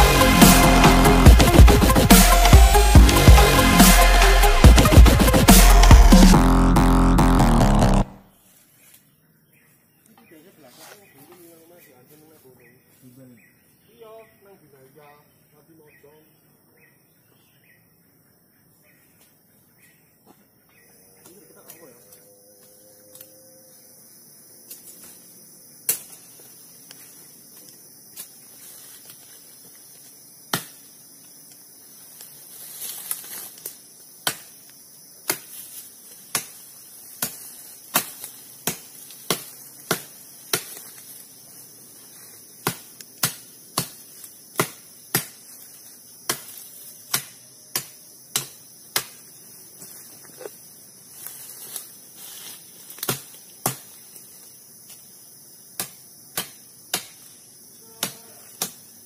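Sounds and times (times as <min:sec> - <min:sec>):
high-pitched insect chirring: 0:20.8 - 0:59.0.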